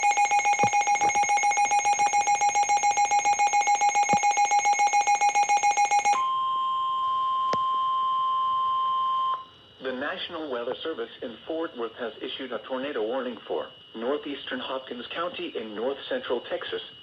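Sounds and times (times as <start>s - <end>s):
radio alarm beeping rapidly: 0.0s - 6.3s
steady alarm tone: 0.0s - 9.5s.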